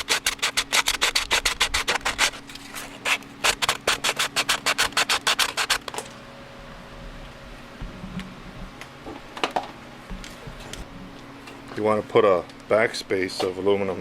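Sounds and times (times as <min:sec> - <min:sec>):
hand sanding strokes on plastic: 0:00.0 - 0:05.9.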